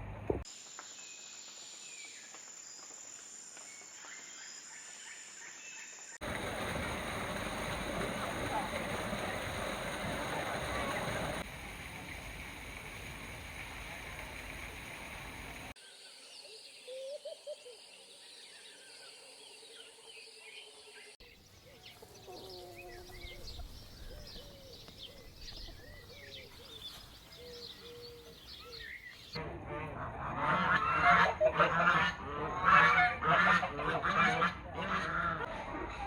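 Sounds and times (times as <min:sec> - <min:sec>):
many birds chirping: 0:05.5 - 0:29.4
background hiss: 0:06.2 - 0:15.8.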